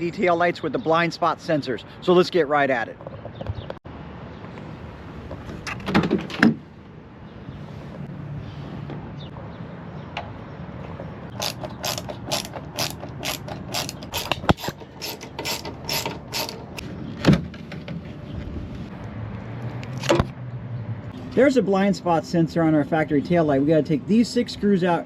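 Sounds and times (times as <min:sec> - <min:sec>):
ratchet wrench clicking: 0:11.4 - 0:16.8.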